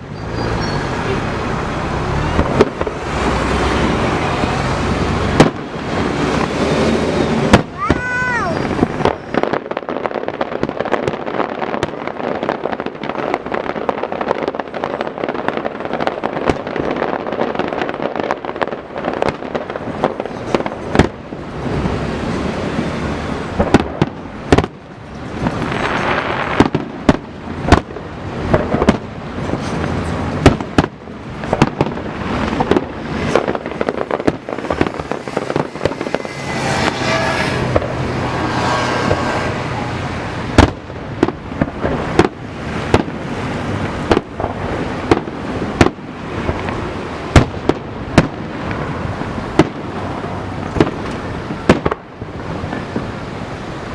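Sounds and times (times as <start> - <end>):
fireworks booming and cracking: 0.0 - 53.9
fireworks crackling: 0.0 - 53.9.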